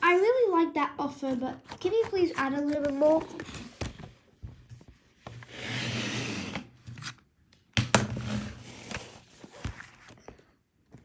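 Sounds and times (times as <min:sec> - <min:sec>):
toys being handled: 0:01.3 - 0:05.4.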